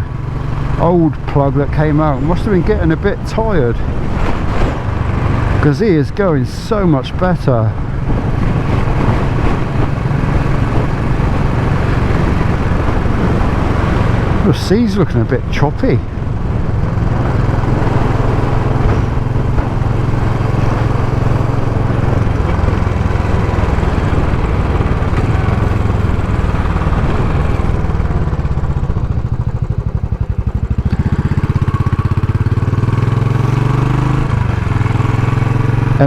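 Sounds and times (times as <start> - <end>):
motorcycle engine thumping: 15.4 - 36.0.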